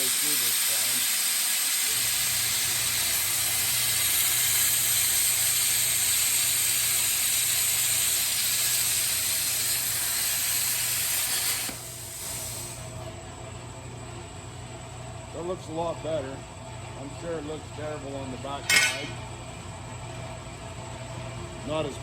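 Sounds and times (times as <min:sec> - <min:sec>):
plasma cutter hissing: 0:00.0 - 0:12.9, 0:18.7 - 0:19.2.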